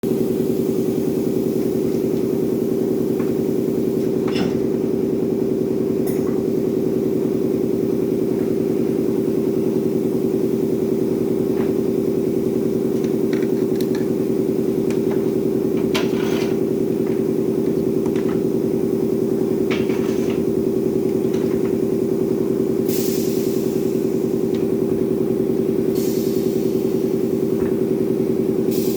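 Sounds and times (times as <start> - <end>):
machinery humming with fast pulse: 0.0 - 28.9.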